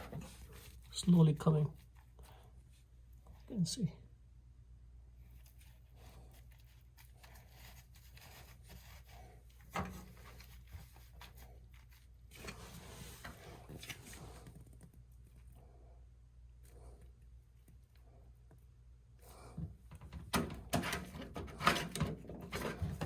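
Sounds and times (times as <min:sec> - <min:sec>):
faint rustles and knocks: 0:00.0 - 0:03.5, 0:05.2 - 0:15.6
low steady hum: 0:00.0 - 0:23.0.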